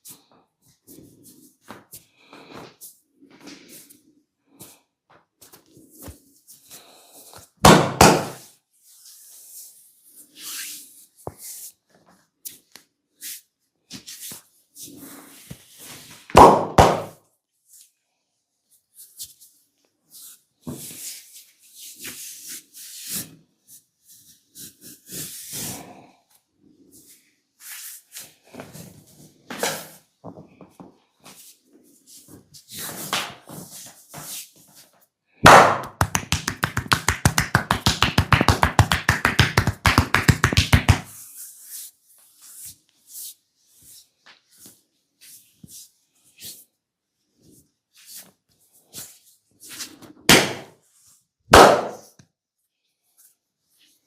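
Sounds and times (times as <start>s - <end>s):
hands rubbing and patting skin: 35.5s - 46.6s.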